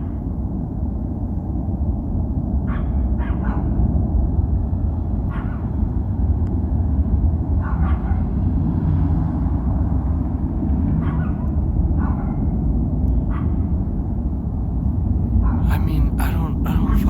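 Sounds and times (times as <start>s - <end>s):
dog barking: 2.7s - 3.7s, 5.3s - 5.7s, 7.6s - 8.3s, 11.0s - 11.4s.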